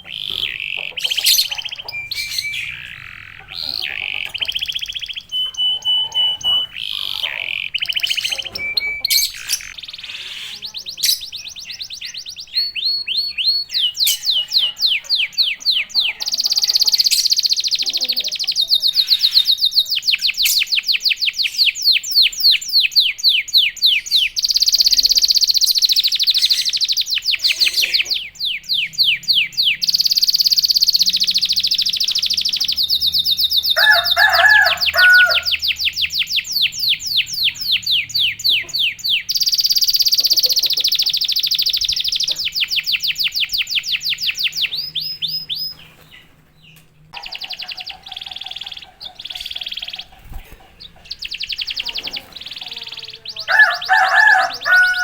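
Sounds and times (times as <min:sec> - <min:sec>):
canary singing trills: 0:00.0 - 0:55.0.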